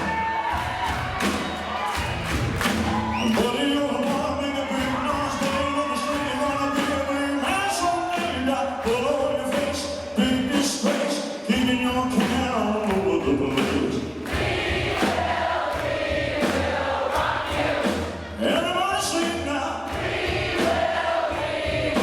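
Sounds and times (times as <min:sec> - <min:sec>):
live band playing: 0:00.0 - 0:15.4, 0:17.2 - 0:20.9
drums beating: 0:00.0 - 0:22.0
voices singing held notes: 0:12.9 - 0:19.1, 0:19.8 - 0:22.0.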